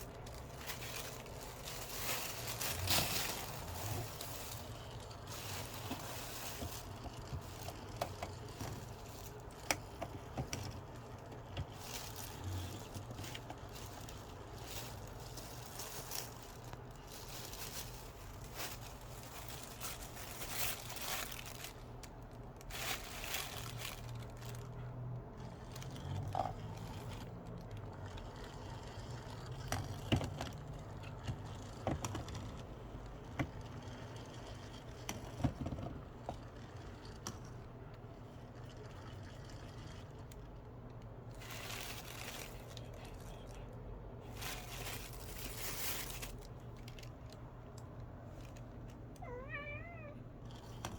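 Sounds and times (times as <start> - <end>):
plastic bag crinkling: 0.0 - 37.6, 38.5 - 49.8.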